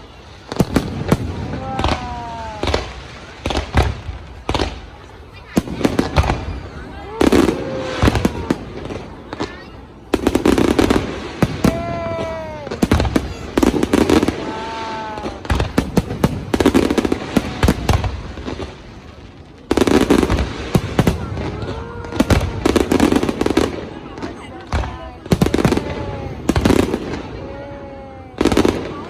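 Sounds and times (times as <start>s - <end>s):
fireworks popping and crackling: 0.0s - 29.0s
deep firework booms: 0.5s - 27.6s.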